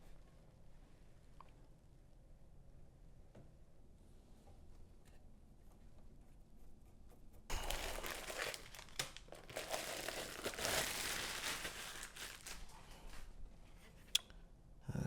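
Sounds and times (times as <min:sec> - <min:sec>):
packaging crinkling and rustling: 0:07.5 - 0:13.3.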